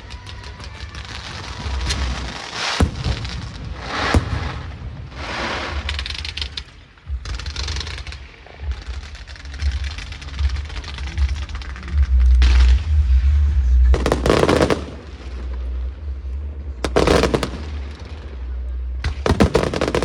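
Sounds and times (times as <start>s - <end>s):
crackling hissing fireworks: 0.0s - 20.0s
firework bangs: 0.7s - 11.6s, 13.9s - 15.7s, 16.8s - 18.4s, 19.0s - 20.0s.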